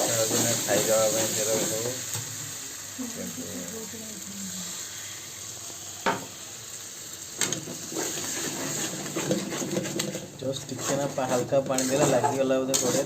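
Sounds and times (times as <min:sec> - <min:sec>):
clattering and scraping in a pan: 0:00.0 - 0:02.3, 0:07.4 - 0:13.0
curry sizzling in a pan: 0:00.0 - 0:13.0.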